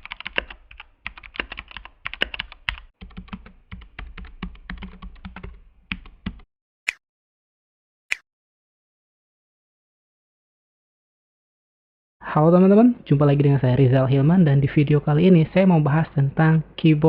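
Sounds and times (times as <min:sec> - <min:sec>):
mechanical keyboard typing: 0:00.0 - 0:06.4.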